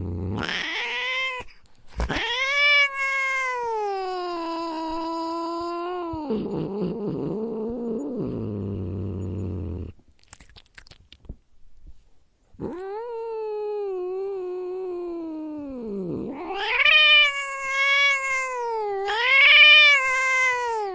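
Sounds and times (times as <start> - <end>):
cat growling: 0.0 - 10.9, 12.6 - 20.9
cat yowling: 0.4 - 1.5, 2.1 - 6.2, 16.3 - 20.9.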